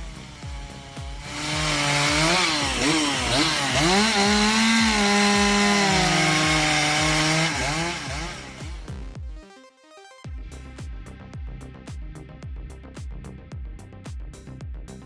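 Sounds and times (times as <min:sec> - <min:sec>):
chainsaw revving: 0:00.0 - 0:09.0.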